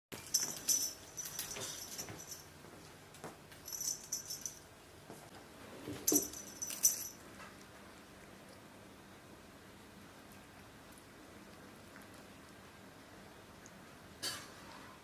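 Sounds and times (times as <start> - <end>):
light metallic jingling: 0.2 - 2.5, 3.6 - 4.6, 6.0 - 7.2.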